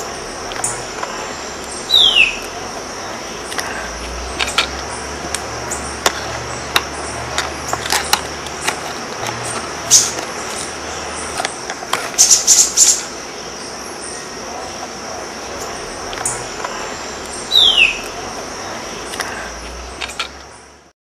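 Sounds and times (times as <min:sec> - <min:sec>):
bird calling sharp high notes: 0:00.0 - 0:02.6, 0:16.2 - 0:18.2
steady high insect buzz: 0:00.0 - 0:20.9.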